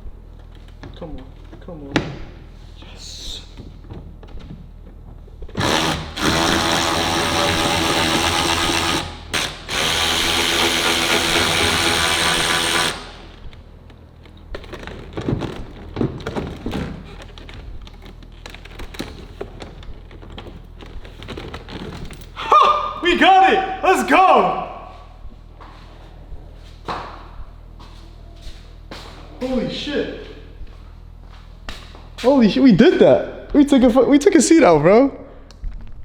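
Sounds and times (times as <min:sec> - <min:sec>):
cordless power tool running: 0:05.6 - 0:13.6.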